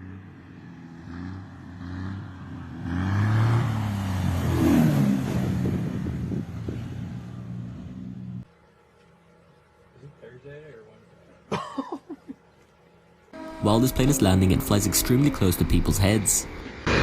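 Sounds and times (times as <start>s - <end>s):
aircraft engine passing: 0.0s - 8.5s, 13.3s - 17.0s.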